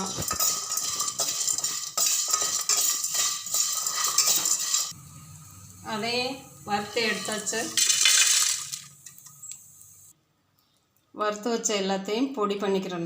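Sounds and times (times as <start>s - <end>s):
utensil scraping spices in a pan: 0.0s - 5.0s, 6.7s - 7.9s.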